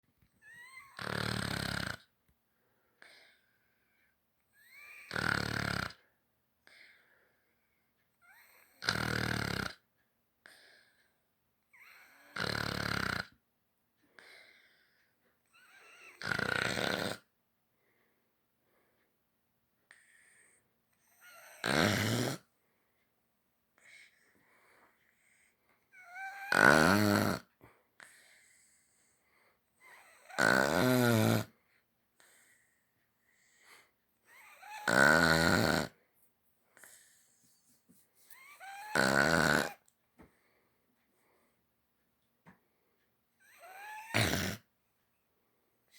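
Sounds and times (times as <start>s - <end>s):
puppy snoring: 0.4s - 2.2s, 4.6s - 6.1s, 8.2s - 11.1s, 11.7s - 13.4s, 15.5s - 17.3s, 19.9s - 22.5s, 25.2s - 29.2s, 29.8s - 31.6s, 32.2s - 36.0s, 38.3s - 39.9s, 43.4s - 44.7s
soft breath: 31.6s - 34.5s, 36.0s - 38.6s.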